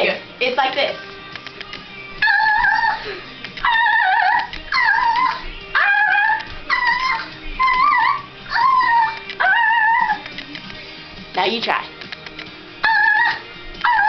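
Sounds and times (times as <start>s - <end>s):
girl squealing: 6.0s - 10.2s.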